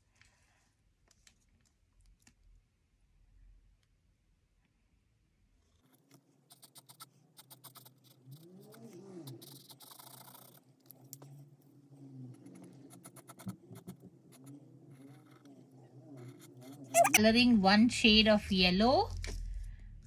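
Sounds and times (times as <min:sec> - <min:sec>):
marker nib scratching: 0:05.8 - 0:17.2
marker pen tapping and clicking: 0:12.5 - 0:14.0.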